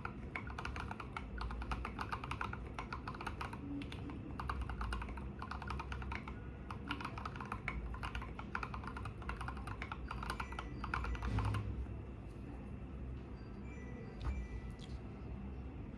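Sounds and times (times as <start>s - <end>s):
fast typing on mechanical keyboard: 0.0s - 11.6s.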